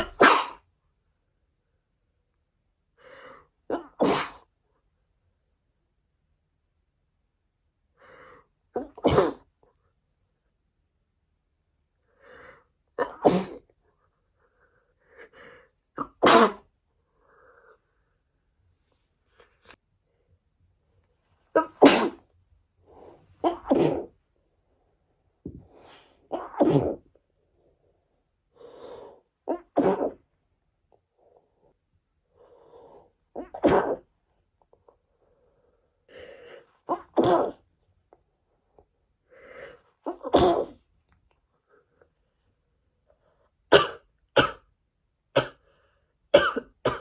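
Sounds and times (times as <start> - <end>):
woman sneezing: 21.6 - 22.2.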